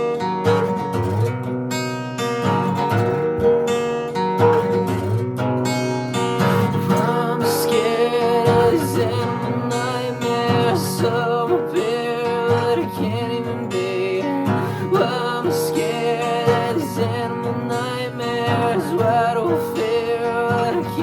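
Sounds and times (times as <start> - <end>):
strummed guitar chords: 0.0 - 21.0
person singing: 6.5 - 21.0.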